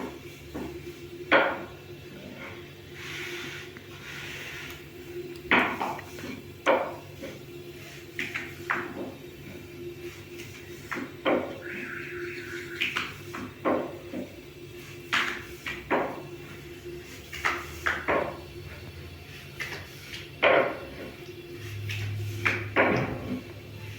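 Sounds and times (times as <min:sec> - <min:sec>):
short high tone: 0:11.6 - 0:12.9.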